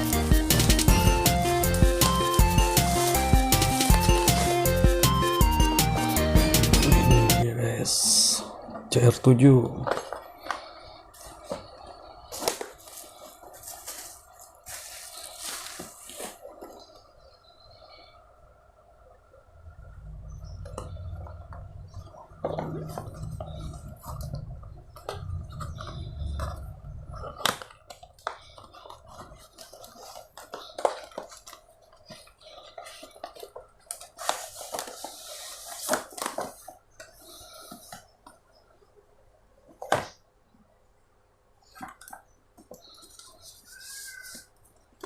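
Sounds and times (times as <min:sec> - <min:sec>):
packaging rustling: 0:00.0 - 0:05.1, 0:09.8 - 0:17.2, 0:22.7 - 0:38.2.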